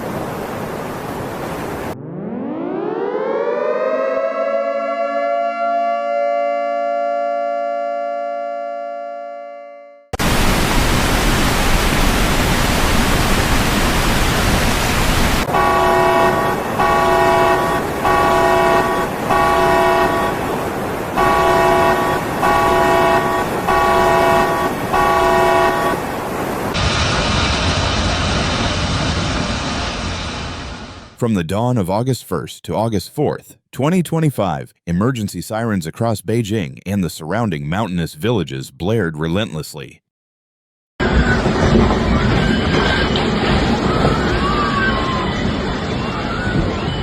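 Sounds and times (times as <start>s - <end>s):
emergency siren wailing: 2.0s - 10.0s, 15.5s - 26.3s, 41.0s - 47.0s
horn blaring a chord: 3.3s - 10.2s, 15.5s - 26.1s
loud rushing roar: 10.2s - 31.2s.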